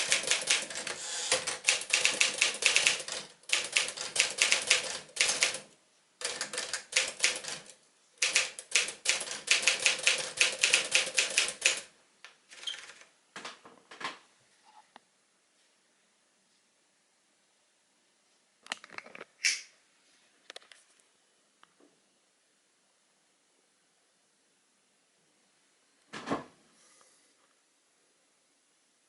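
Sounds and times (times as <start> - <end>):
manual typewriter typing: 0.0 - 11.9.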